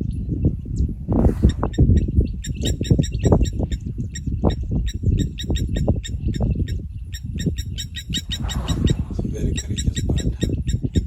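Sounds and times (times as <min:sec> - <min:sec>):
birds chirping: 0:00.0 - 0:11.0
low rumble: 0:08.1 - 0:10.7.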